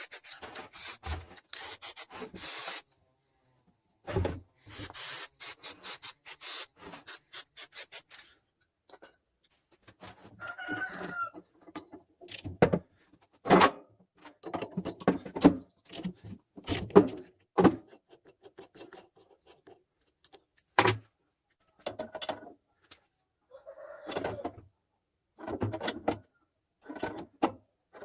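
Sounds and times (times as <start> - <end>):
metal parts knocking and clinking: 11.4 - 12.6.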